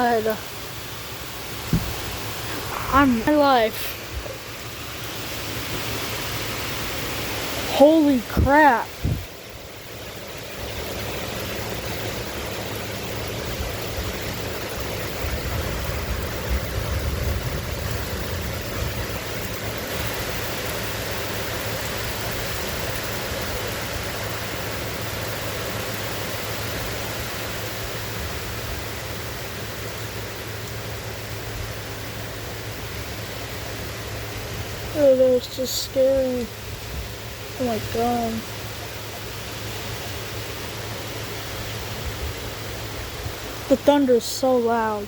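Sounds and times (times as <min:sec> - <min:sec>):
heavy rain pouring: 0:00.0 - 0:28.2.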